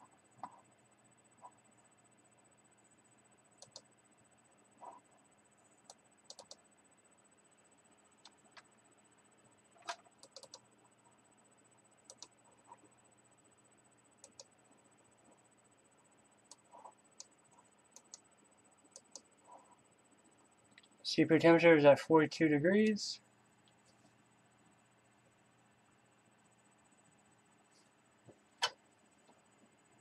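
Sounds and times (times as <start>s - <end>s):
computer mouse clicks: 0.4s - 0.7s, 3.6s - 3.9s, 5.8s - 6.6s, 9.8s - 10.7s, 12.0s - 12.8s, 14.2s - 14.6s, 16.5s - 18.3s, 18.9s - 19.7s
keyboard clicks: 3.6s - 3.9s, 5.8s - 6.6s, 9.8s - 10.6s, 12.1s - 12.4s, 14.2s - 14.5s, 18.0s - 18.2s, 18.9s - 19.3s.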